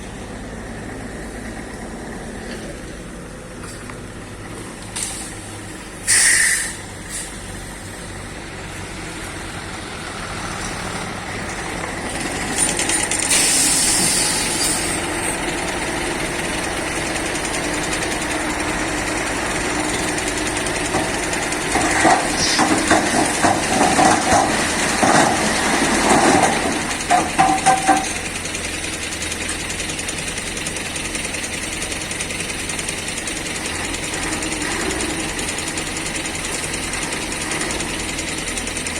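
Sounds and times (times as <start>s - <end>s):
diesel machinery running: 0.0s - 38.9s
short hiss: 5.0s - 7.5s, 13.2s - 15.0s
metal clanks and knocks: 11.4s - 28.9s.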